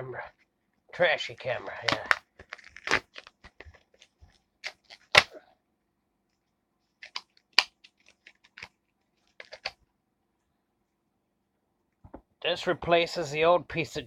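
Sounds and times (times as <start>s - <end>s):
plastic packaging crackling: 1.7s - 5.3s, 7.0s - 9.8s.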